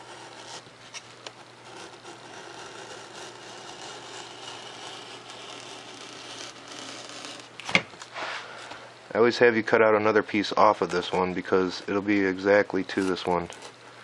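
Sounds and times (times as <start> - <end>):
knife cutting through foam: 0.0 - 7.7, 12.9 - 13.8.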